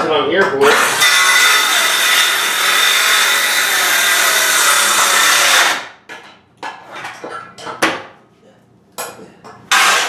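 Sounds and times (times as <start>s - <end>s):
power tool cutting into wall: 0.6s - 6.0s, 9.7s - 10.0s.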